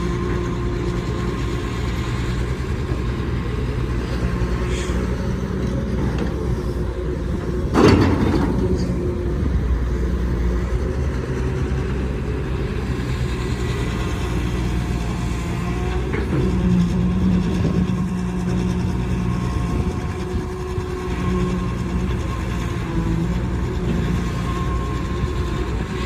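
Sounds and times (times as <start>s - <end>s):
excavator diesel engine running: 0.0s - 26.0s.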